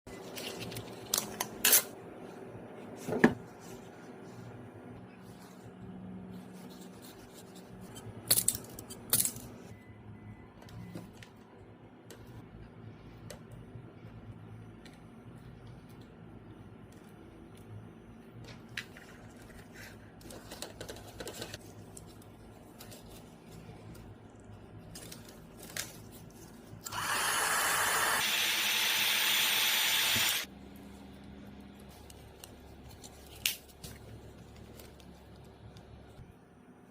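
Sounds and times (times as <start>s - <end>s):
loud hissing tool: 26.9s - 30.5s.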